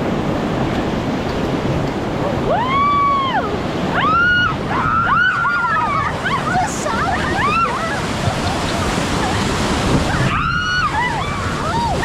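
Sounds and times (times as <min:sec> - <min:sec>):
whitewater rapids rushing: 0:00.0 - 0:12.0
people whooping: 0:02.2 - 0:09.4, 0:10.1 - 0:12.0.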